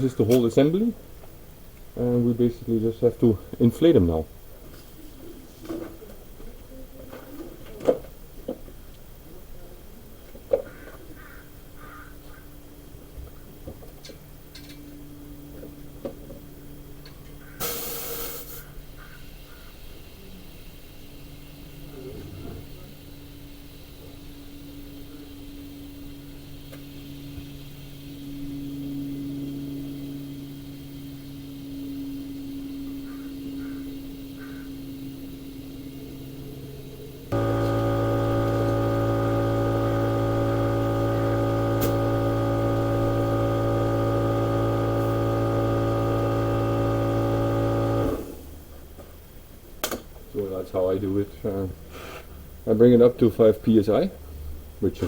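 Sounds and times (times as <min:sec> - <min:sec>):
low steady hum: 0:20.0 - 0:50.4
motor running with loud hum: 0:24.7 - 0:48.6.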